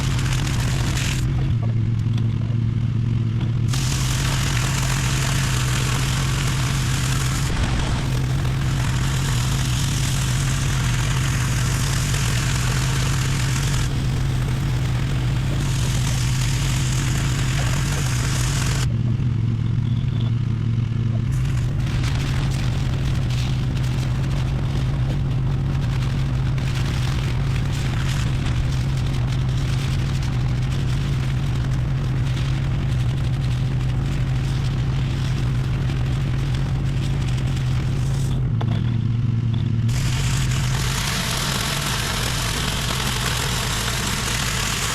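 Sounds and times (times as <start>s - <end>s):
pressure washer engine running: 0.0s - 1.3s, 3.7s - 18.9s, 21.3s - 38.4s, 39.9s - 44.9s
spray hissing: 3.7s - 18.9s, 39.9s - 44.9s.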